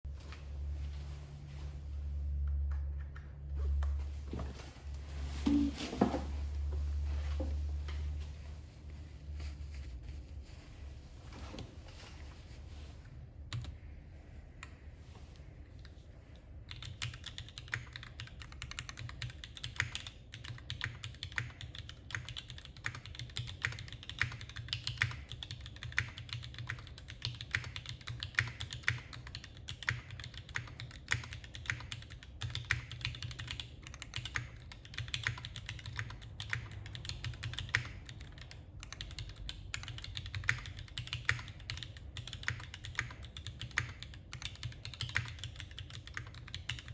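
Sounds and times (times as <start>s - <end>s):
typing on mechanical keyboard: 16.7s - 46.9s.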